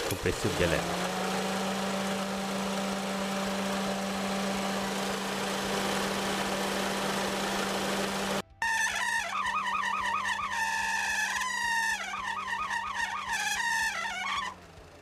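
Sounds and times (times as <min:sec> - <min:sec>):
vibrating drone of compressor belt: 0:00.0 - 0:08.4.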